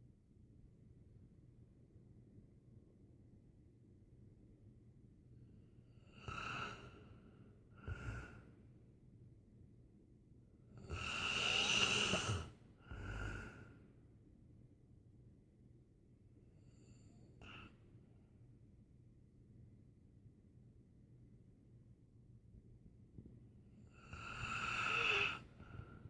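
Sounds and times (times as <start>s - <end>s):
rasping snoring breaths: 6.0s - 7.1s, 7.8s - 8.5s, 10.8s - 13.8s, 23.9s - 26.0s.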